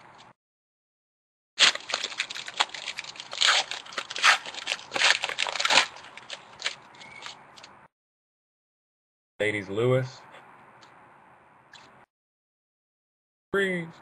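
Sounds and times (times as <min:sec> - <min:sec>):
wrapper tearing and crinkling: 0:01.6 - 0:07.7.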